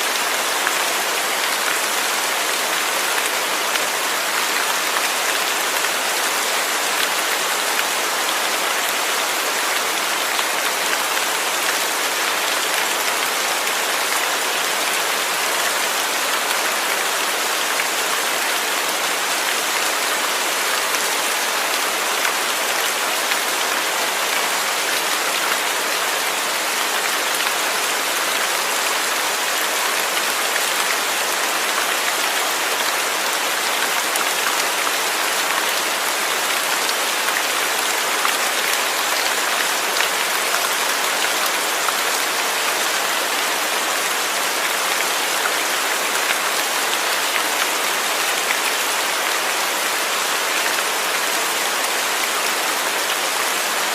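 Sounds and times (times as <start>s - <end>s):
steady rain falling: 0.0s - 53.9s.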